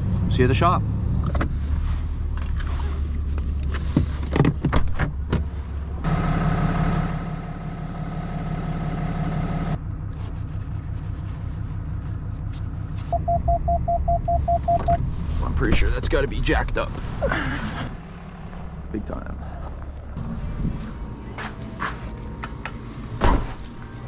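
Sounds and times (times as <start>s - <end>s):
truck engine running: 5.1s - 24.0s
short electronic beeps: 13.1s - 15.0s.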